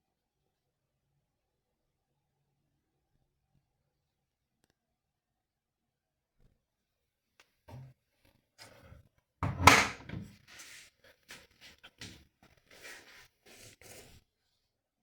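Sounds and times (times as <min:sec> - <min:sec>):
heavy thunk of washing machine: 0:09.4 - 0:10.3.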